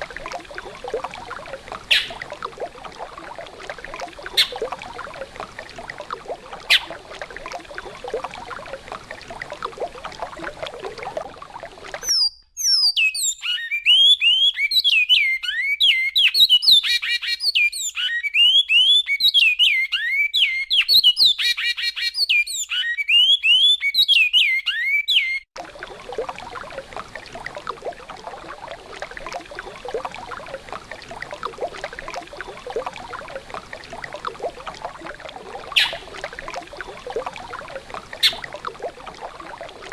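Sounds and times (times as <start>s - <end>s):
finch singing whistled notes: 1.9s - 2.2s, 12.0s - 25.4s.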